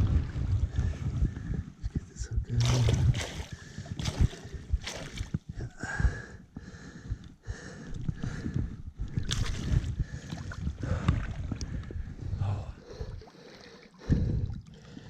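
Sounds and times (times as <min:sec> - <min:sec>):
water splashing: 0:02.5 - 0:05.4, 0:09.2 - 0:11.6.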